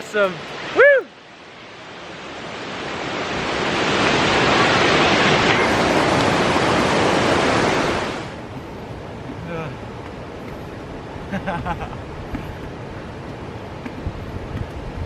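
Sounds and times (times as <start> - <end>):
waterfall rushing: 0.0 - 11.3.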